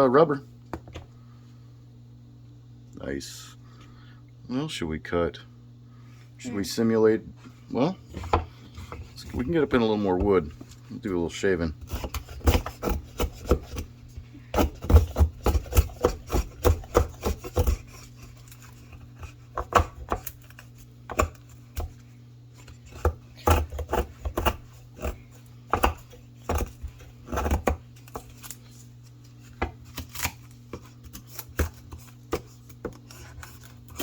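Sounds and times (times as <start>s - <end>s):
knife shaving and chopping wood: 7.4s - 34.0s.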